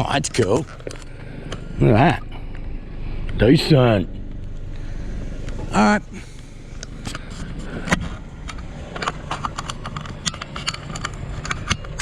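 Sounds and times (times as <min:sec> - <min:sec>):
low steady rumble: 0:00.0 - 0:12.0
objects clicking and knocking: 0:06.8 - 0:12.0.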